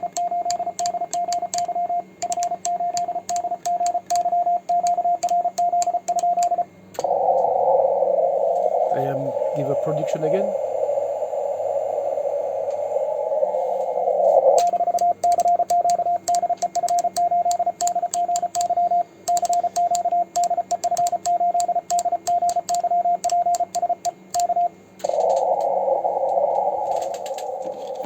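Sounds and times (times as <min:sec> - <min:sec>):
receiver hiss: 0:00.0 - 0:20.6, 0:23.7 - 0:28.0
morse code sidetone beeps: 0:00.0 - 0:28.0.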